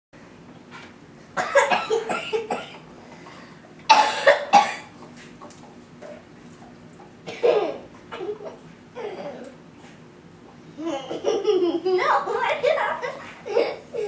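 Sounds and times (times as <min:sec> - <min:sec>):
person coughing: 0:01.4 - 0:02.8, 0:03.9 - 0:04.9, 0:07.3 - 0:08.4.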